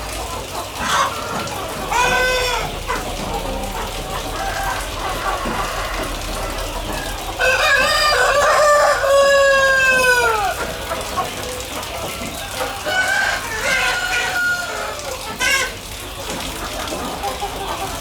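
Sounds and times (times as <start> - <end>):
chickens clucking: 0.0 - 18.0
rooster crowing: 3.8 - 10.6, 12.8 - 15.2.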